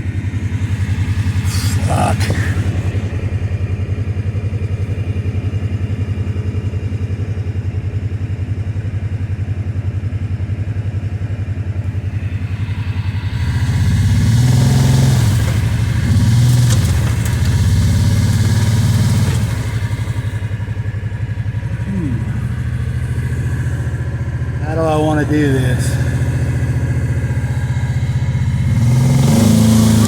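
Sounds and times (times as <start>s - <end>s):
engine idling and revving: 0.0s - 30.0s.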